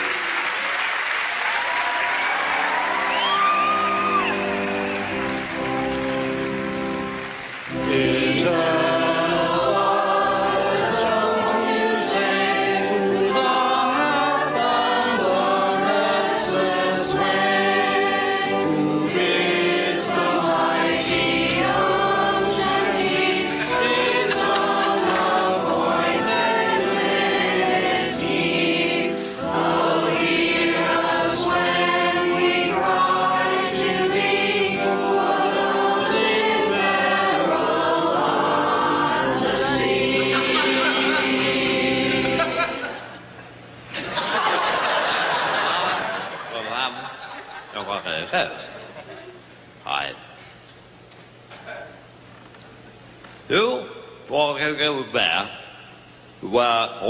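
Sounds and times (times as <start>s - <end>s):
choir singing a hymn: 7.5s - 47.8s.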